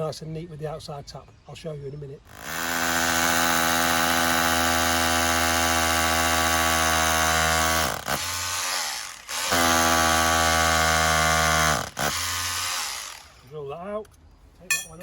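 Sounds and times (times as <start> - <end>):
power drill drilling into stone: 2.3 - 13.4.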